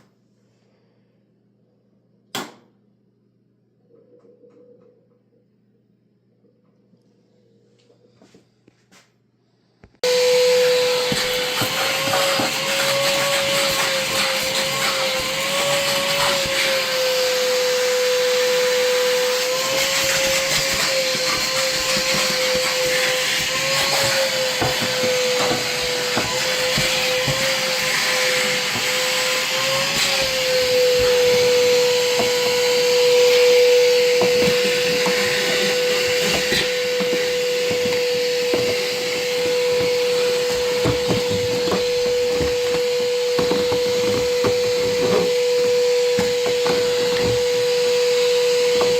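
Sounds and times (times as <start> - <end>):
shop vacuum running: 10.0 - 48.9.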